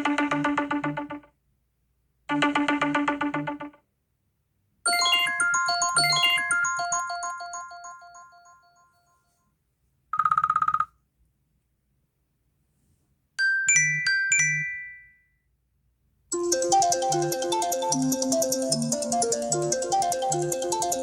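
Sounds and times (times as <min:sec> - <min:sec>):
phone ringtones: 0:04.9 - 0:08.7
bell-like chimes: 0:04.9 - 0:09.3.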